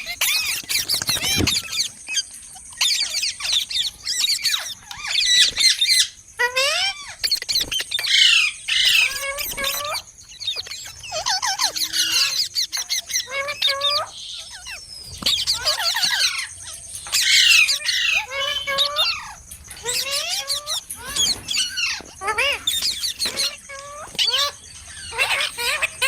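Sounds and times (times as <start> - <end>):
parrot chattering and squawking: 0.0 - 26.0.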